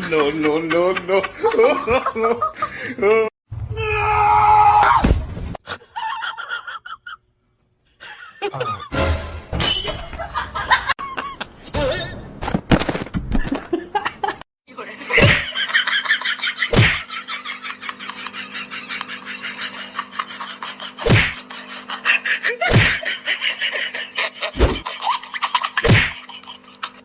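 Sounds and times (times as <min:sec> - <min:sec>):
laughter: 0:00.0 - 0:03.3, 0:05.7 - 0:07.3, 0:07.9 - 0:08.9, 0:10.1 - 0:11.5, 0:13.5 - 0:27.0
music: 0:08.9 - 0:09.6.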